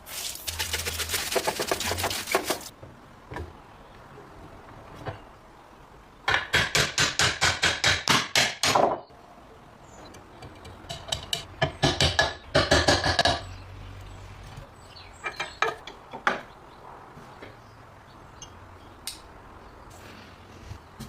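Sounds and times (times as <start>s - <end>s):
hand tool rapid sharp strokes: 0.1s - 2.7s.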